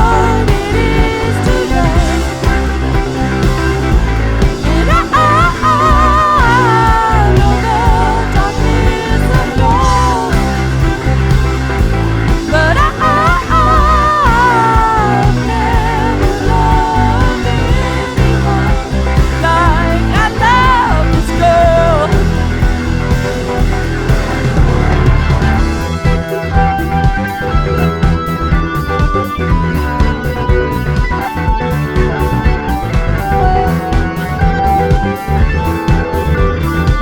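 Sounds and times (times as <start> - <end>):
rock band playing: 0.0 - 37.0.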